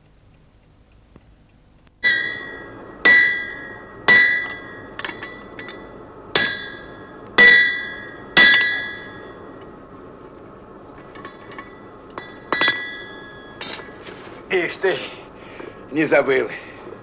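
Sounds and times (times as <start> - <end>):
hammer striking ringing metal: 2.0 - 9.7, 11.0 - 15.3.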